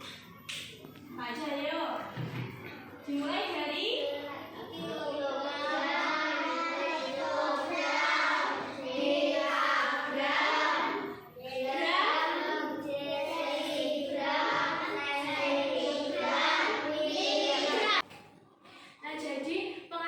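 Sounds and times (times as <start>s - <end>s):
children singing together: 4.7s - 18.0s.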